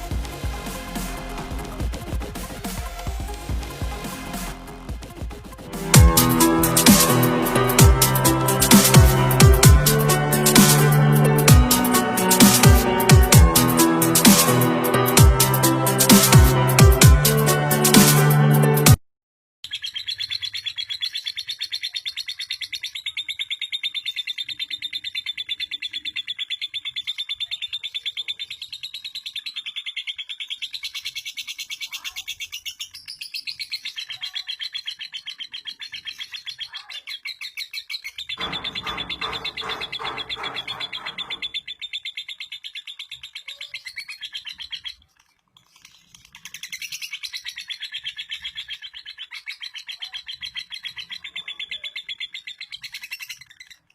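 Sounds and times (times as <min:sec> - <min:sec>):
lower fuller bird sound: 0:19.6 - 0:45.0
bird chattering trill: 0:38.2 - 0:42.0.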